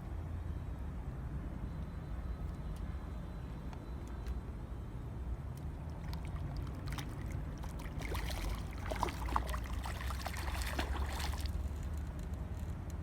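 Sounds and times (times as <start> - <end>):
water splashing and trickling: 5.6 - 11.8.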